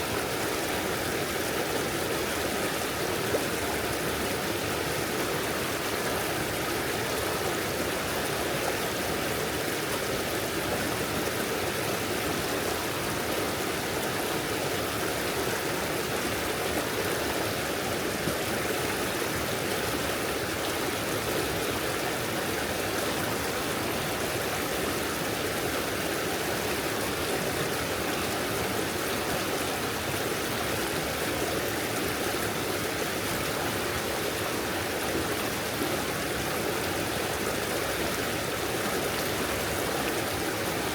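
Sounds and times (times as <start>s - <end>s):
stream babbling over stones: 0.0s - 40.9s.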